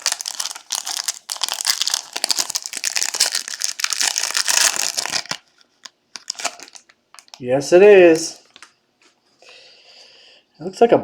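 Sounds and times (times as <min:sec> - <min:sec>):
wrapper crinkling and tearing: 0:00.0 - 0:08.7.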